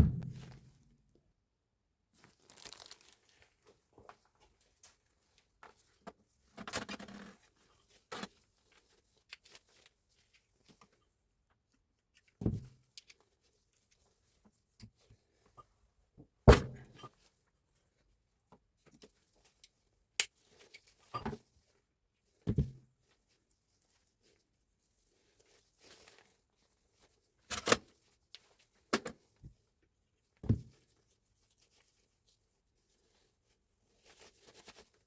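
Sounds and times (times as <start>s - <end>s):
sharp knocks: 0.0s - 0.6s
rustling or scraping: 2.3s - 3.5s.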